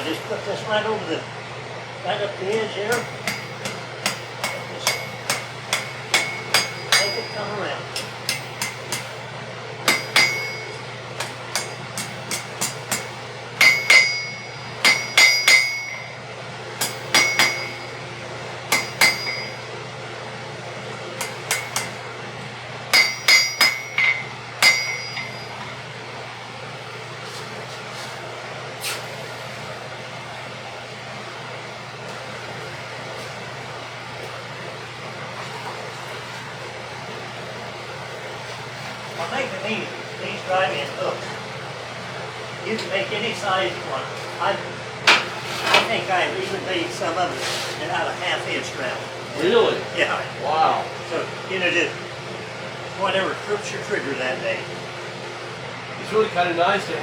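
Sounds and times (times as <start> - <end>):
steady low hum: 0.0 - 57.0
hammer striking iron on anvil: 2.9 - 9.2, 9.8 - 16.2, 16.8 - 18.0, 18.7 - 19.7, 21.2 - 22.1, 22.9 - 25.8.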